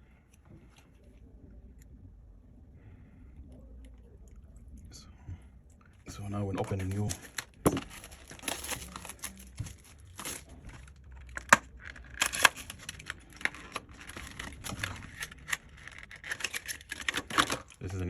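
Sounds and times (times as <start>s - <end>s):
plastic packaging crinkling: 6.2s - 18.0s.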